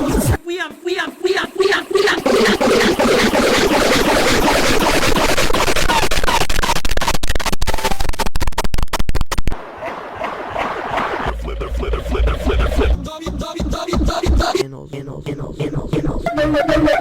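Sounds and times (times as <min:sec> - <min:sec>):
rapid stuttering clicks: 0:01.0 - 0:09.6
distorted glitchy alert noise: 0:01.6 - 0:09.6.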